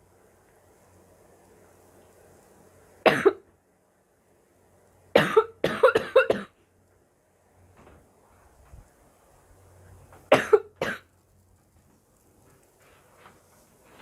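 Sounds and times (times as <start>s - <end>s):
girl coughing: 3.1s - 3.4s, 5.2s - 6.6s, 10.3s - 11.0s.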